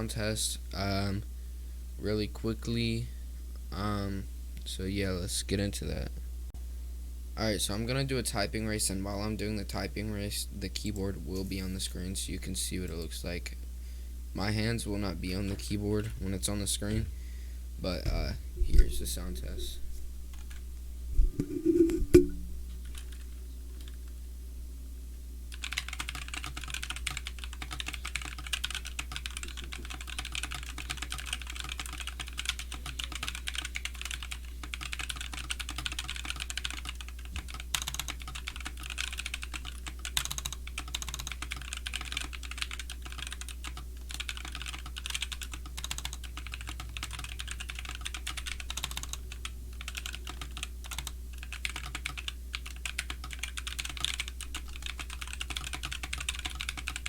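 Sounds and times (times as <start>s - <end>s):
fast typing on mechanical keyboard: 22.9s - 24.0s, 25.5s - 57.0s.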